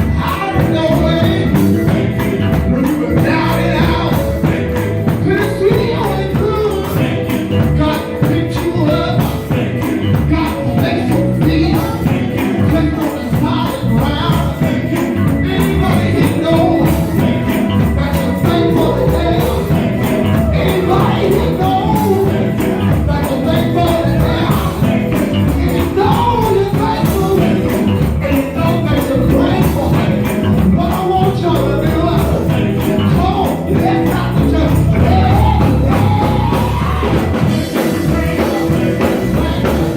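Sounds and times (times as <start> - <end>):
band playing gospel music: 0.0 - 39.9
people singing: 0.0 - 39.9
tambourine shaking: 0.0 - 39.9.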